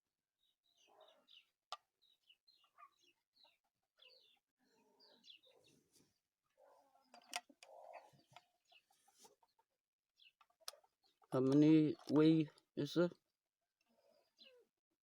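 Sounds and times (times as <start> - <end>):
bird chick peeping: 0.7 - 4.4.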